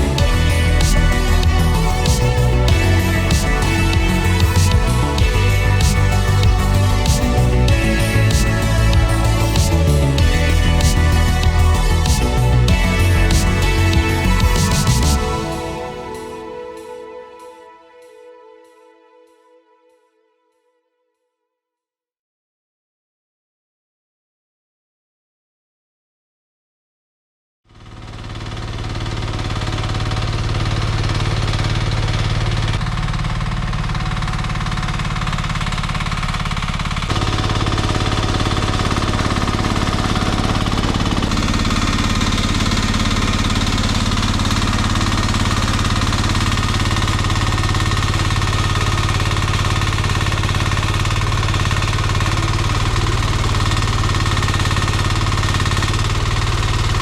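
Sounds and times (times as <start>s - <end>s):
mini excavator engine running: 28.0s - 57.0s.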